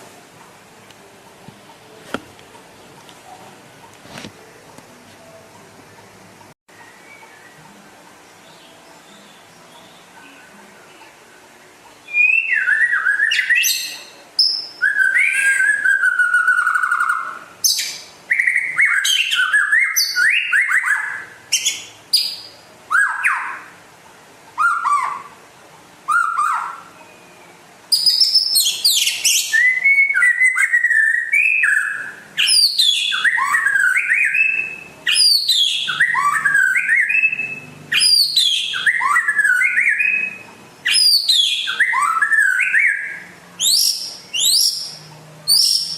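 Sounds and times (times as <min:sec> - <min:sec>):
bird singing whistled phrases: 0:12.0 - 0:23.7, 0:26.1 - 0:45.9.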